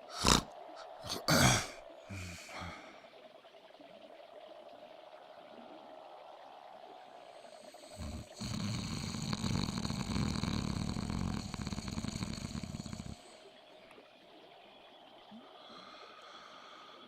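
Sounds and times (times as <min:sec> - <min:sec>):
faint ambient background: 0:00.0 - 0:17.0
loud rattling snore: 0:00.1 - 0:00.4, 0:08.0 - 0:13.2.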